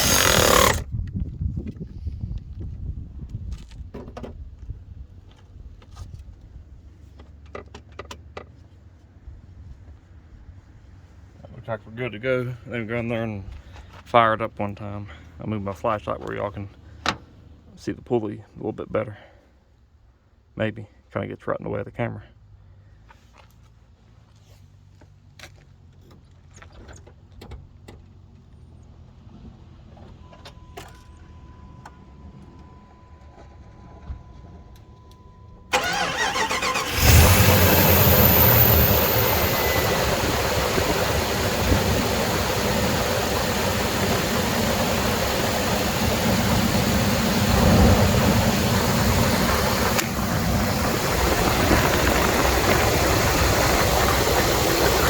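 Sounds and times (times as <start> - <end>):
car engine cranking and idling: 0.0 - 0.8, 35.7 - 55.0.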